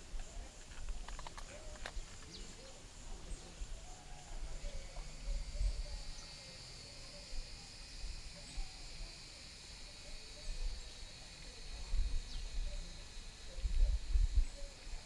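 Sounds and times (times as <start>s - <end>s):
insects chirring: 0.0s - 15.0s
wind rumble on microphone: 11.7s - 15.0s.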